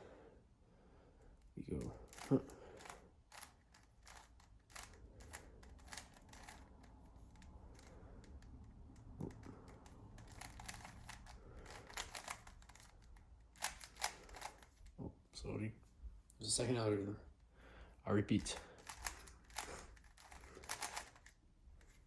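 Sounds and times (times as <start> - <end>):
rubik's cube clicking: 1.8 - 14.9, 18.8 - 22.0.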